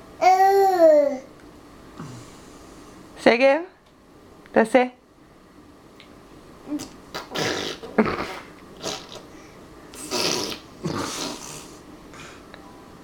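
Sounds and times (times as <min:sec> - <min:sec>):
person blowing raspberries: 0:06.8 - 0:11.8.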